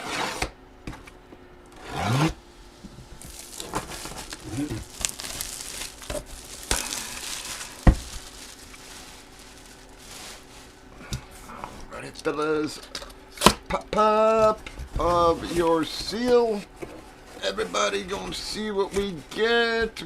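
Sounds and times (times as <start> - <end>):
packaging crinkling and tearing: 3.2 - 10.8.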